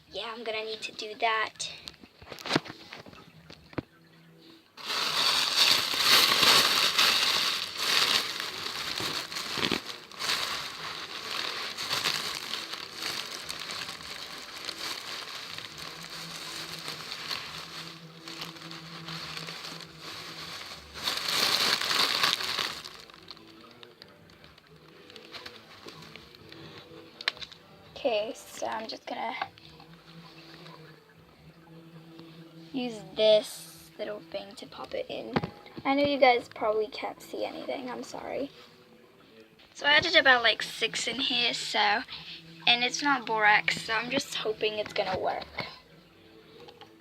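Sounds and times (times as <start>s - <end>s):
crinkling and rustling: 1.8s - 3.9s, 4.8s - 27.6s.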